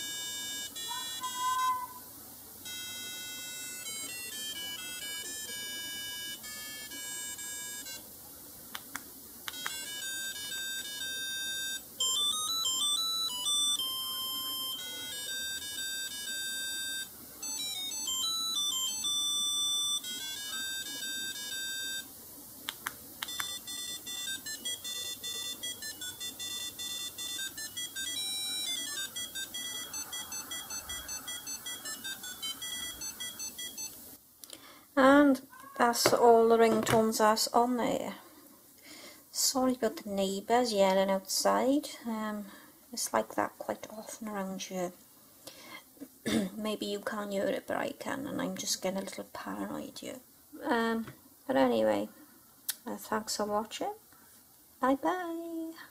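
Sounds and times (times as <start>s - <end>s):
electronic phone ringtones: 0.0s - 1.8s, 2.6s - 8.0s, 9.5s - 22.1s, 23.3s - 34.0s
fast repeated beeps: 23.3s - 33.9s.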